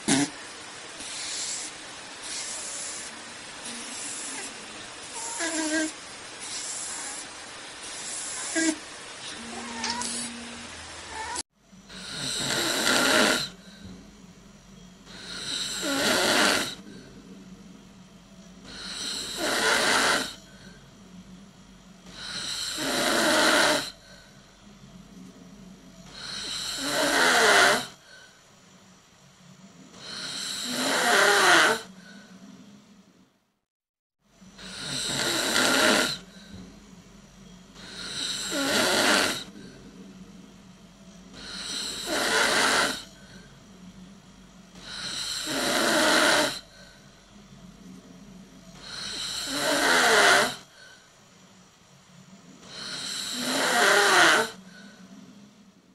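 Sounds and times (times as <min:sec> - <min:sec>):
person snoring loudly: 0:00.0 - 0:00.4, 0:09.5 - 0:13.6, 0:15.1 - 0:17.1, 0:18.6 - 0:20.7, 0:22.0 - 0:24.1, 0:26.0 - 0:28.2, 0:29.9 - 0:32.2, 0:34.6 - 0:36.6, 0:37.8 - 0:39.8, 0:41.3 - 0:43.5, 0:44.8 - 0:47.0, 0:48.8 - 0:50.9, 0:52.6 - 0:54.9
quiet breaths: 0:00.9 - 0:10.7, 0:11.6 - 0:33.4, 0:34.3 - 0:55.9.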